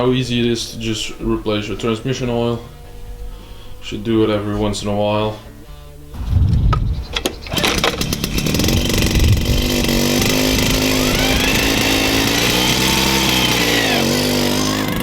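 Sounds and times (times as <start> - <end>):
two-stroke moped engine: 7.2 - 15.0.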